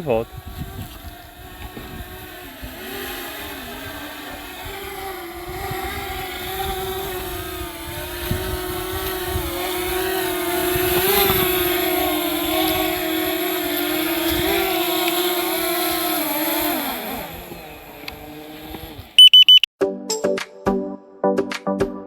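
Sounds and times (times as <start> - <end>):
wind buffeting microphone: 0.0 - 17.4
drone propellers humming: 0.0 - 19.6.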